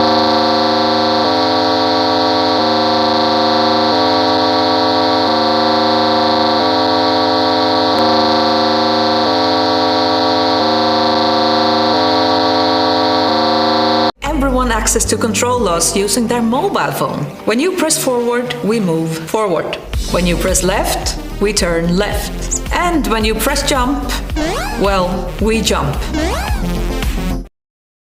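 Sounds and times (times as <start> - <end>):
buzzy two-pitch alert tone: 0.0 - 14.1, 23.4 - 27.0.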